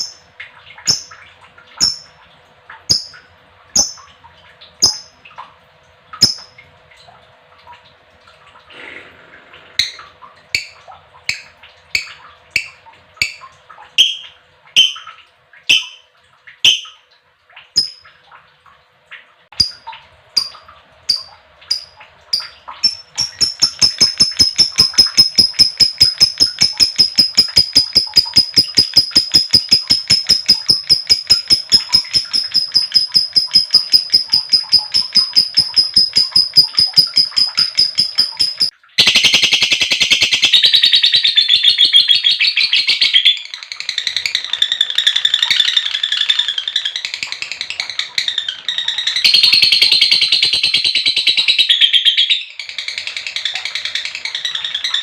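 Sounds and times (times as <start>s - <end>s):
lovebird chirping and chattering: 0.9s - 1.2s, 1.8s - 2.1s, 4.8s - 5.1s, 6.2s - 6.5s, 17.8s - 18.0s, 20.4s - 55.0s.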